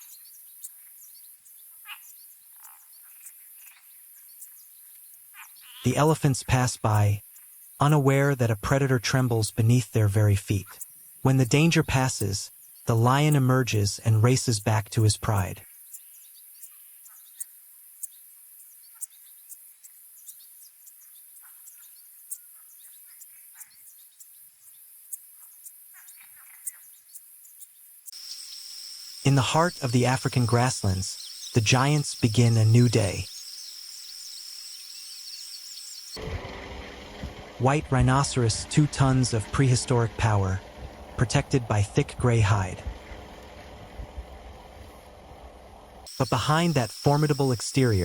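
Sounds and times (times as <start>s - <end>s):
croaking calls: 5.3s - 7.2s, 28.1s - 36.2s, 46.1s - 48.0s
high insect hiss: 7.2s - 7.9s, 15.6s - 36.2s, 46.1s - 48.0s
bird chirps: 10.6s - 36.2s, 46.1s - 48.0s
quick chirps: 27.6s - 36.2s, 46.1s - 48.0s.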